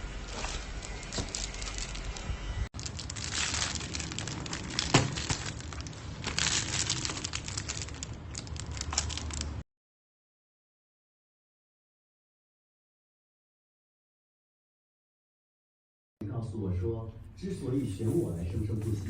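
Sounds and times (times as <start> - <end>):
packaging crinkling and rustling: 0.2 - 9.6.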